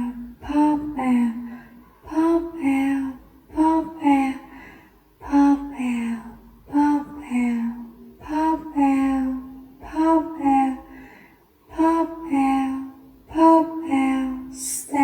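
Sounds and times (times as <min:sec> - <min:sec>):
high voice sing-song speaking: 0:02.1 - 0:04.5, 0:05.2 - 0:10.9, 0:11.7 - 0:15.0.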